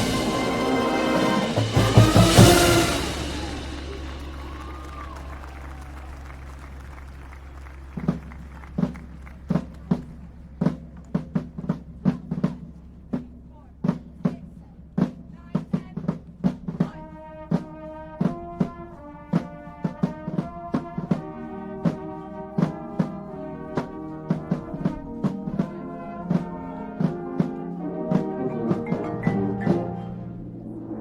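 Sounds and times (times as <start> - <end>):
brass chords: 0.0 - 10.7, 16.6 - 31.0
drum-line hits: 0.0 - 31.0.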